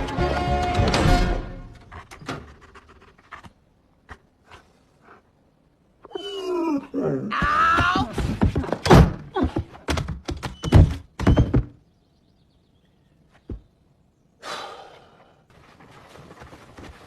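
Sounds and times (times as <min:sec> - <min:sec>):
thuds and knocks: 0:07.4 - 0:11.8.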